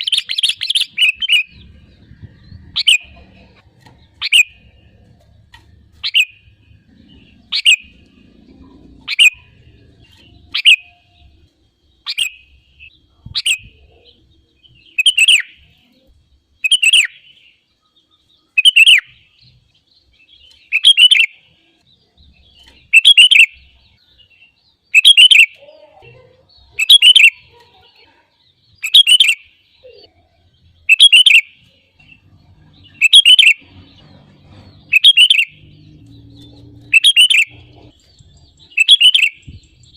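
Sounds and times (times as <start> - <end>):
bulbul call: 36.9 - 38.0.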